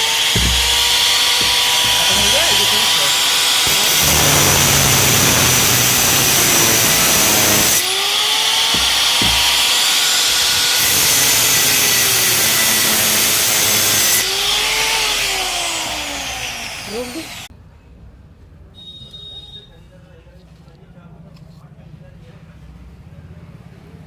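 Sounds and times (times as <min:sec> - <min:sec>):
electric motor running and whining: 0:00.0 - 0:17.5.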